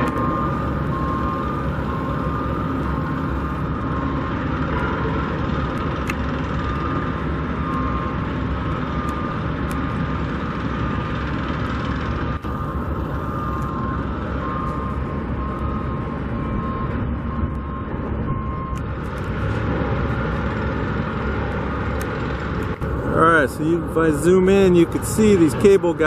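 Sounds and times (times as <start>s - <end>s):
construction machinery rumble: 0.0s - 26.0s
traffic: 0.0s - 26.0s.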